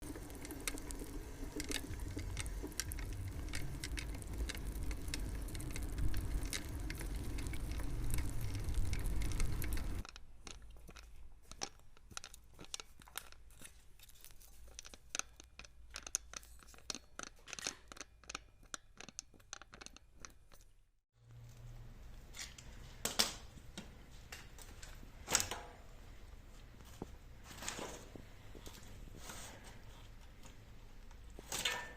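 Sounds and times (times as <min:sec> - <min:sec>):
bicycle freehub clicking: 0:00.1 - 0:13.4
low rumble: 0:01.2 - 0:10.0.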